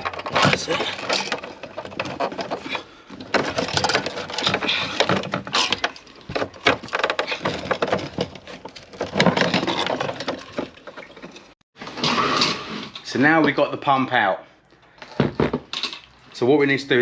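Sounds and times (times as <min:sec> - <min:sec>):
plastic clicks and scraping: 0:00.0 - 0:11.6.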